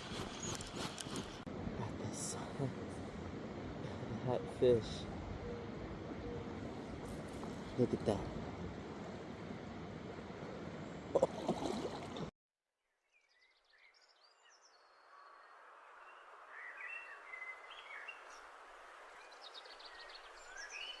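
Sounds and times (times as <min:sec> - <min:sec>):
creek water rushing: 0:00.0 - 0:12.3
soft stream hiss: 0:00.0 - 0:12.3, 0:14.7 - 0:21.0
songbirds chirping: 0:00.1 - 0:12.3, 0:13.1 - 0:21.0.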